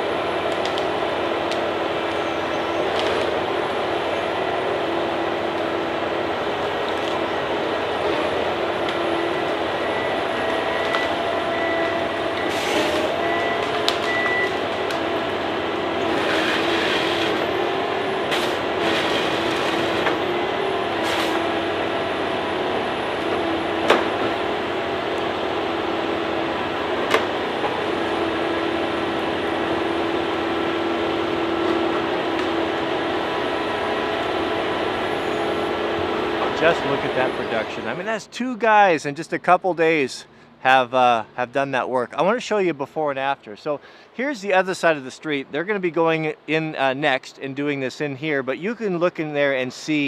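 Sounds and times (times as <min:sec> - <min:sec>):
tree-cutting machine engine whining: 0:00.0 - 0:42.4
sharp wood cracks: 0:00.5 - 0:01.7, 0:12.8 - 0:15.1.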